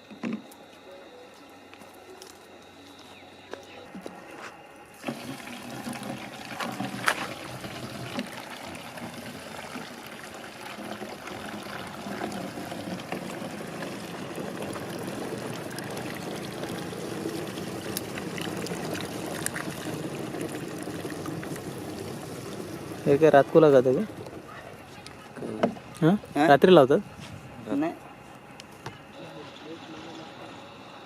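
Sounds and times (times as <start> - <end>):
liquid pouring and trickling: 5.0 - 24.5.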